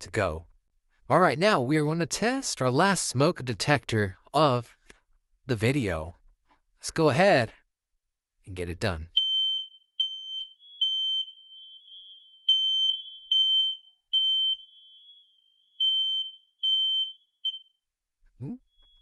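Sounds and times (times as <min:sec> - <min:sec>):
smoke alarm beeping: 0:09.2 - 0:17.8.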